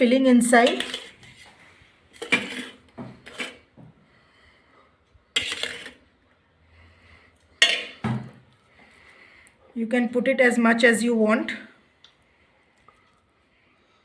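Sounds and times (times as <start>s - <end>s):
spoon scraping a dish: 0.6s - 3.7s, 5.4s - 6.1s, 7.6s - 8.0s.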